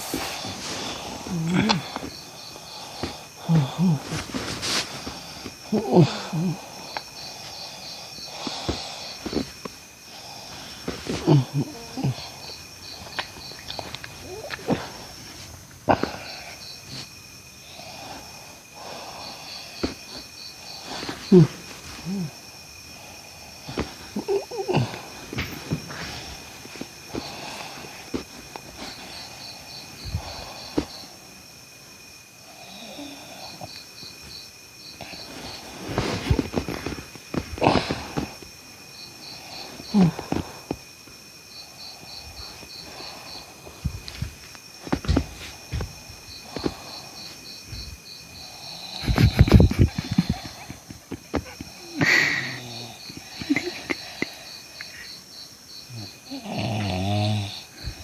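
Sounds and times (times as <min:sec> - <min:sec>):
person snoring with snorts: 0:00.0 - 0:31.1, 0:32.4 - 0:33.8, 0:35.0 - 0:38.4, 0:39.3 - 0:40.8, 0:48.4 - 0:55.2, 0:55.9 - 0:58.0
crickets chirping: 0:00.0 - 0:58.0.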